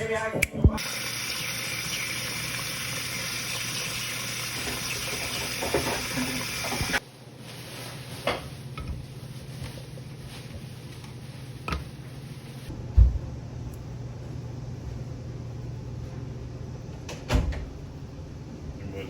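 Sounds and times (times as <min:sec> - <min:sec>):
kitchen tap running into sink: 0:00.8 - 0:07.0.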